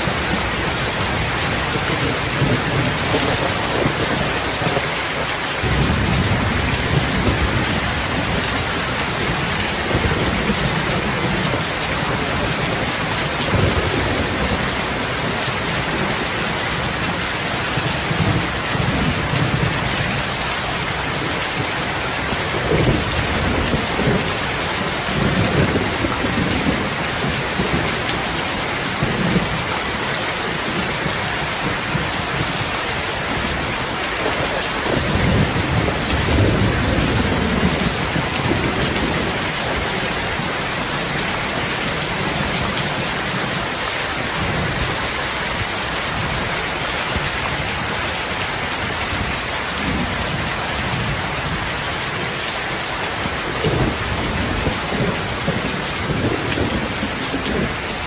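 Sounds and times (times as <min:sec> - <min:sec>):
heavy rain: 0:00.0 - 0:58.0
rolling thunder: 0:05.6 - 0:29.9, 0:30.6 - 0:43.6.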